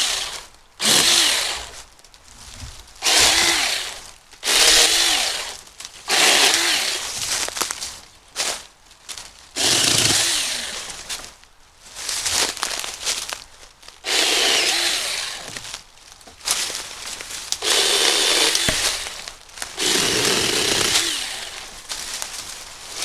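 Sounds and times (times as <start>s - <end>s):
mini chainsaw motor whining: 0.0s - 1.8s, 3.0s - 7.1s, 9.6s - 11.0s, 14.0s - 15.6s, 17.6s - 21.8s
brush crackling: 0.2s - 23.0s.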